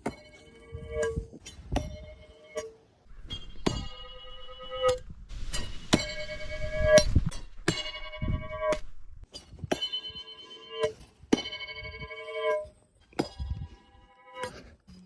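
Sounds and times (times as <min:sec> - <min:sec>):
metal object struck ringing: 0:01.8 - 0:08.9, 0:09.7 - 0:13.7.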